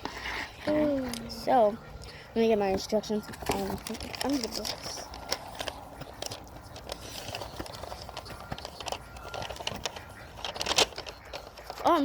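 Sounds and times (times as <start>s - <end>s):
objects clicking and tapping: 2.6s - 11.9s.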